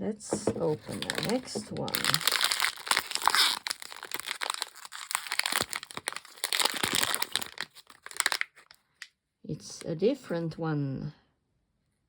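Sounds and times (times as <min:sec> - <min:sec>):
foil bag crinkling: 0:00.4 - 0:08.8.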